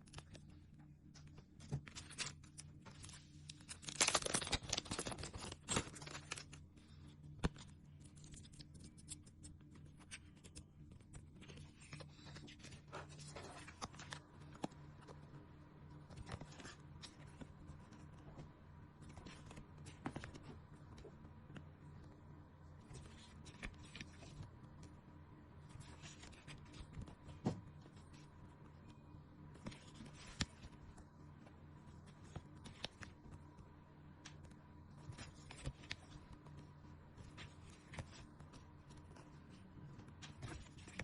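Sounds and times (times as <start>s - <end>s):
low steady hum: 0.0s - 41.0s
paper and plastic crinkling: 1.6s - 6.6s, 11.4s - 15.2s.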